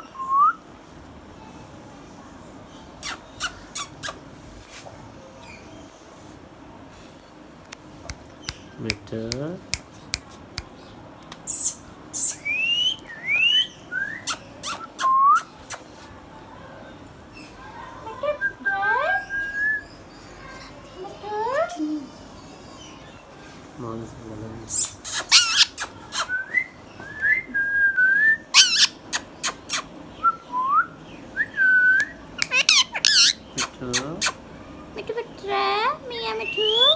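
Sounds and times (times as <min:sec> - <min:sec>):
harsh scratchy bird calls: 0:02.9 - 0:04.6, 0:08.1 - 0:12.6, 0:13.6 - 0:16.1, 0:24.7 - 0:26.4, 0:28.5 - 0:30.1, 0:32.1 - 0:34.5
parrot screech: 0:24.8 - 0:26.3, 0:28.5 - 0:29.9, 0:32.4 - 0:34.4
parakeet whistling: 0:24.8 - 0:27.2, 0:28.1 - 0:30.4, 0:31.4 - 0:33.8, 0:36.3 - 0:36.9.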